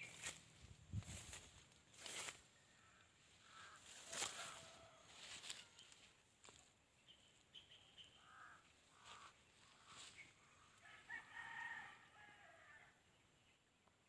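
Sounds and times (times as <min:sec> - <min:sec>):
rooster crowing: 0:02.8 - 0:05.9, 0:10.8 - 0:13.0.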